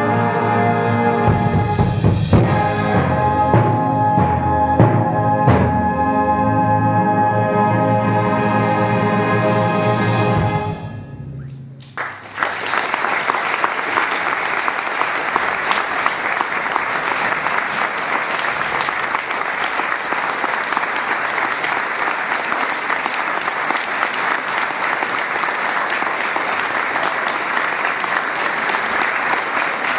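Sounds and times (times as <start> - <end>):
audience applause: 11.8 - 29.9.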